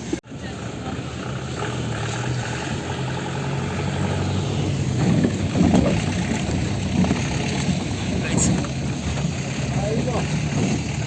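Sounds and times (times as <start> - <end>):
off-road vehicle engine running: 0.0 - 11.0
rumbling and knocks: 4.6 - 11.0.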